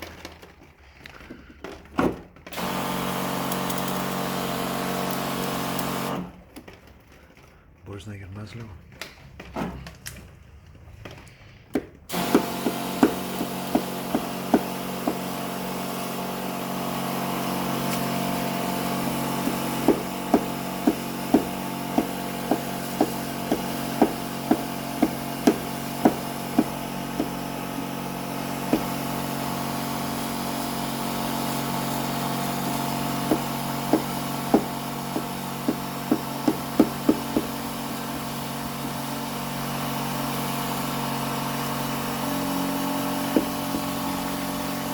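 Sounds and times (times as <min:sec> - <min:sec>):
electric motor humming: 0:12.1 - 0:44.9.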